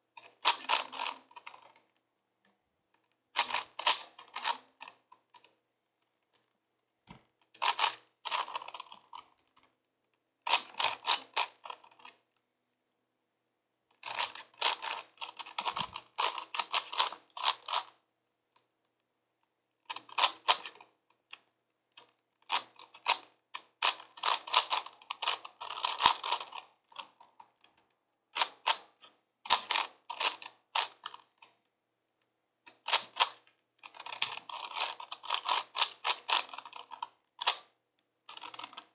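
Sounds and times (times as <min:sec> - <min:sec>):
puzzle cube clacking: 0:00.2 - 0:01.8, 0:03.4 - 0:05.5, 0:07.5 - 0:09.6, 0:10.5 - 0:12.2, 0:14.0 - 0:17.9, 0:19.9 - 0:20.9, 0:22.4 - 0:27.8, 0:28.4 - 0:31.5, 0:32.7 - 0:37.7, 0:38.3 - 0:38.9.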